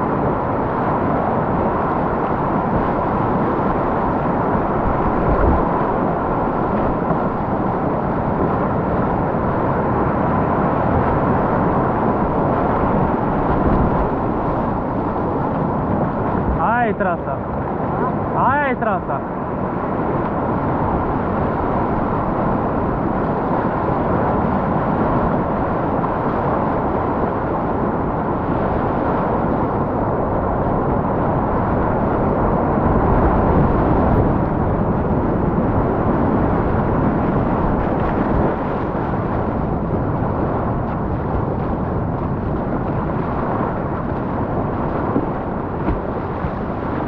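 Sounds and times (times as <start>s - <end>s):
whitewater rapids rushing: 19.3s - 47.0s.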